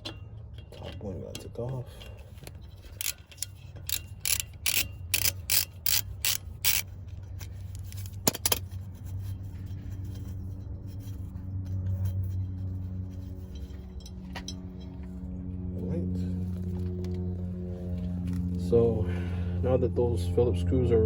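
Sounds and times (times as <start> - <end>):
steady low hum: 0.0 - 21.0
metallic clicks of hand tools: 2.4 - 8.6.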